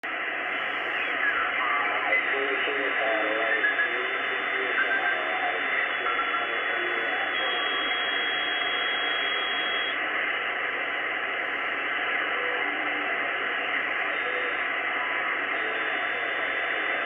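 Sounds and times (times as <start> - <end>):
radio hiss: 0.1 - 17.0
garbled radio voice: 0.6 - 9.8.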